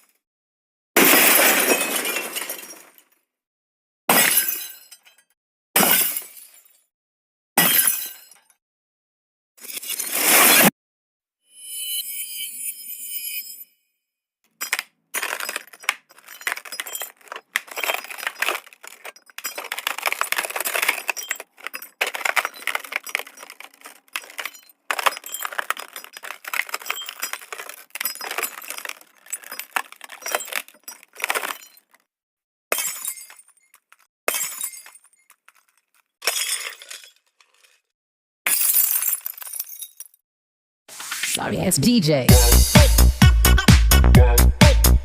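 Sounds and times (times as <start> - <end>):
glass shattering: 1.0 - 3.2, 4.1 - 6.8, 7.6 - 8.6, 14.6 - 32.0, 32.7 - 37.9, 38.5 - 40.2.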